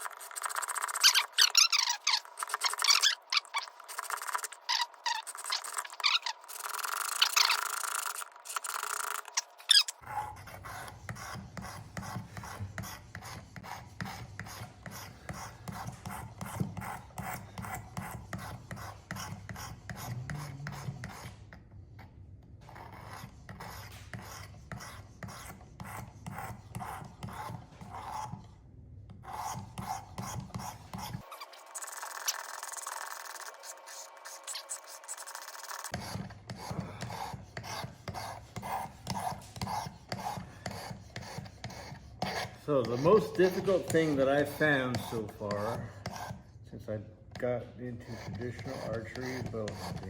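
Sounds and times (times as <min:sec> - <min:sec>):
sharpener rasping on steel: 0:00.0 - 0:21.3, 0:29.2 - 0:46.4.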